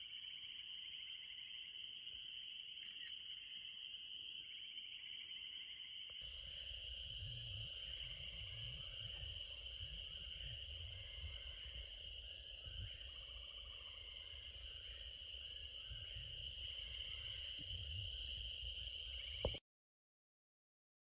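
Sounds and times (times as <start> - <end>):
insects droning: 0.0 - 19.6
single click: 2.8 - 3.2.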